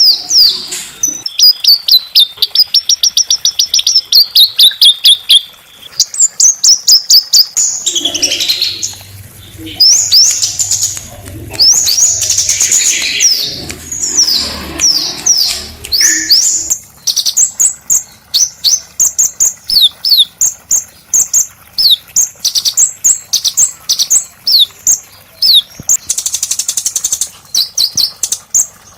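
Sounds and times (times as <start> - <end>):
songbird singing: 0.0 - 20.9.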